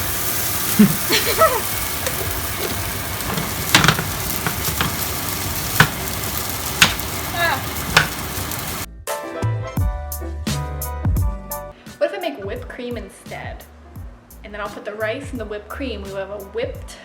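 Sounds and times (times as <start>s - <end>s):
vegetables sizzling in a pan: 0.0s - 8.9s
utensil knocking against pan: 2.1s - 8.7s.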